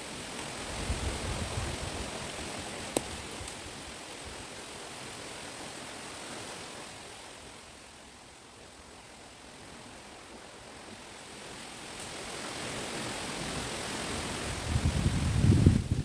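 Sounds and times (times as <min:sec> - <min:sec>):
wind rustling leaves: 0:00.0 - 0:16.0
wind rumble on microphone: 0:00.5 - 0:04.5, 0:12.3 - 0:16.0.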